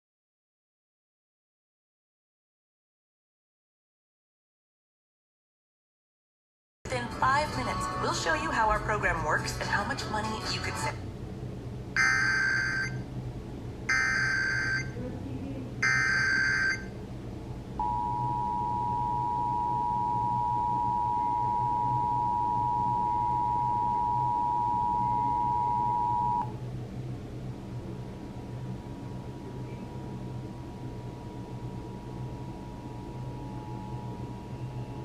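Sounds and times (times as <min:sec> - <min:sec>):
two-tone attention signal: 0:13.9 - 0:15.0, 0:15.8 - 0:16.9, 0:17.8 - 0:26.5.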